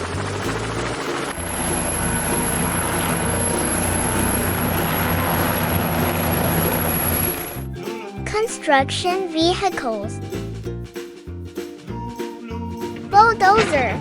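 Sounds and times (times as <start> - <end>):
helicopter running: 0.0 - 7.8.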